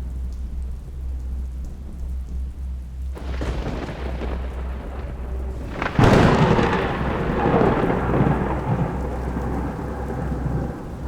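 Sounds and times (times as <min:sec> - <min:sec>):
steady rain: 0:00.0 - 0:11.0
thunder crack and rumble: 0:03.1 - 0:11.0.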